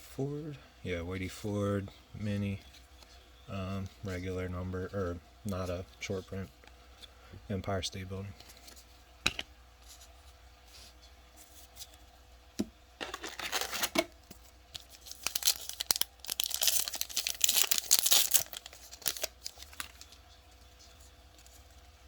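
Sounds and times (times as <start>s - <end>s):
card pack wrapper tearing: 13.0s - 14.1s, 14.7s - 20.2s.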